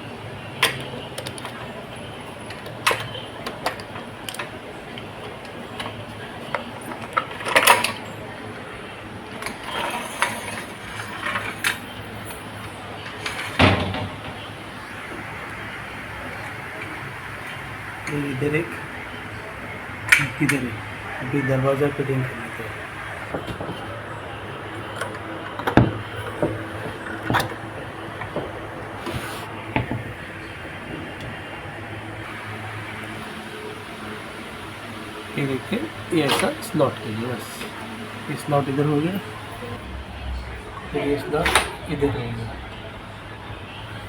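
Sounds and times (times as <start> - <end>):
door scraping on track: 9.4 - 12.4, 13.1 - 14.7, 23.2 - 32.2
sliding door knocks and clunks: 13.3 - 14.6, 25.1 - 31.6.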